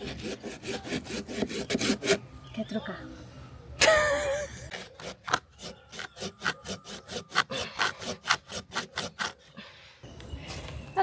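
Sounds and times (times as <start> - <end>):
hand saw cutting a log: 0.0 - 2.2, 4.7 - 9.5.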